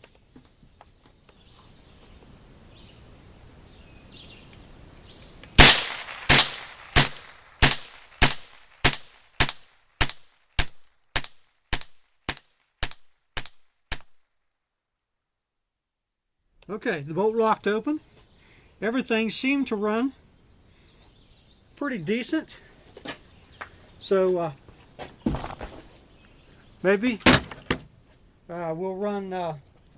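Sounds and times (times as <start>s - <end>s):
rifle shots: 5.6s - 14.2s.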